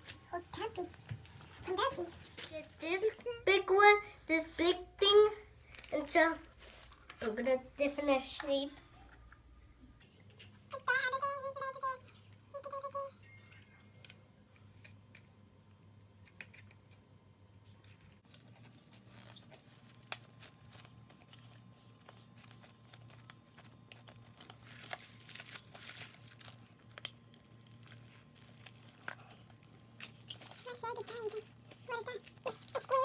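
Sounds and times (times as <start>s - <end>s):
steady low hum: 0.0s - 33.0s
rustling: 5.6s - 7.4s.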